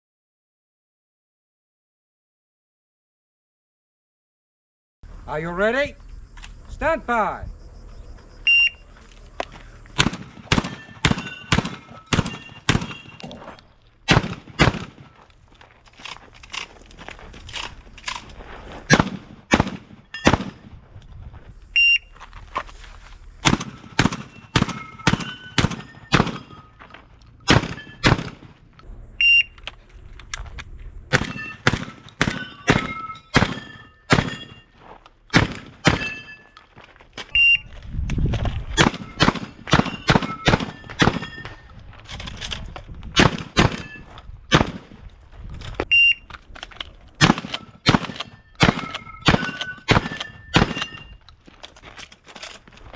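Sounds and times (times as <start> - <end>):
shotgun shots: 10.0 - 13.2, 14.1 - 15.1, 18.9 - 20.7, 23.4 - 26.7, 27.5 - 28.6, 31.1 - 34.6, 35.3 - 36.3, 38.8 - 41.4, 43.2 - 45.0, 47.2 - 51.1.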